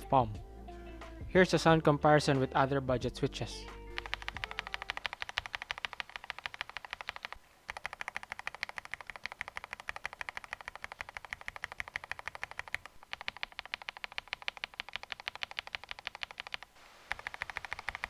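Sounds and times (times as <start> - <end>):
mechanical keyboard typing: 4.0 - 18.0.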